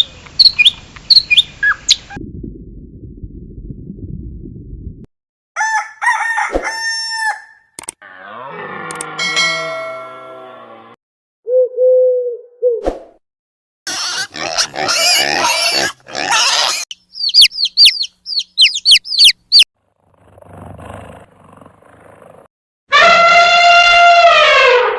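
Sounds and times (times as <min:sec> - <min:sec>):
rooster crowing: 0:05.6 - 0:07.7
animal calls: 0:13.9 - 0:19.6
high chirps: 0:16.9 - 0:19.7.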